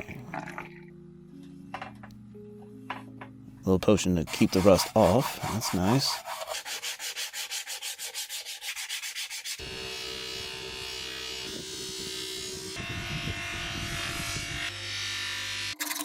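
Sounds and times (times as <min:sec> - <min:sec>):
abrasive rubbing on metal: 0:03.9 - 0:09.6.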